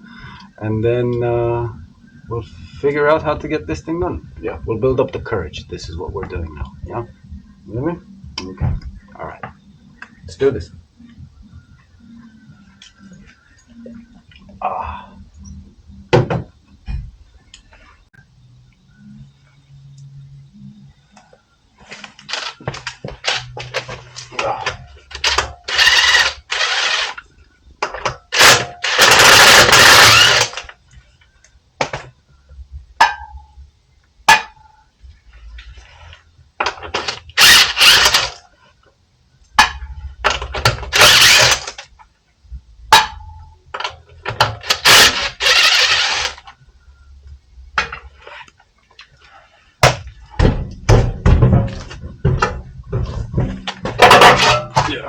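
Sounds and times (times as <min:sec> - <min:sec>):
impact wrench hammering: 0:27.9 - 0:30.6, 0:37.0 - 0:38.4, 0:39.6 - 0:41.7, 0:44.3 - 0:46.4.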